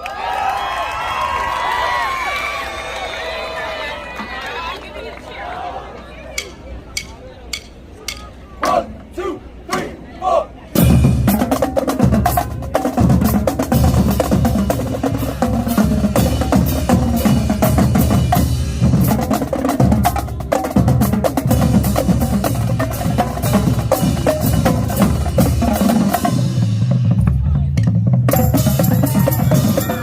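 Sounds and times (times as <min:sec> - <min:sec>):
marching drumline playing: 0:06.4 - 0:10.0, 0:10.7 - 0:30.0.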